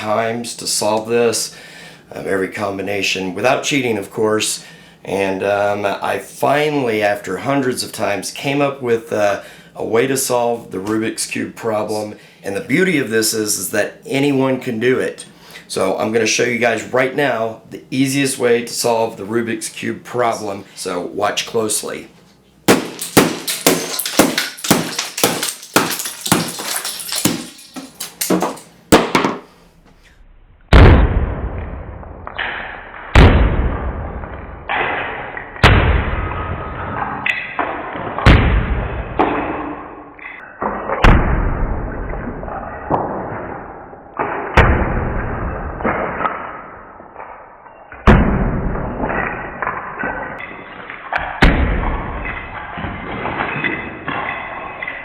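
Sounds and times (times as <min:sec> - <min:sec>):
heavy ringing thuds: 0:22.7 - 0:29.5.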